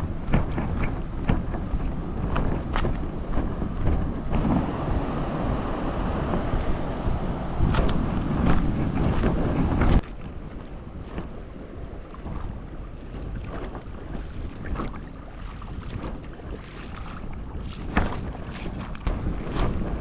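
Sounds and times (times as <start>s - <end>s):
wind on microphone: 0.0s - 20.0s
water splashes: 4.3s - 20.0s.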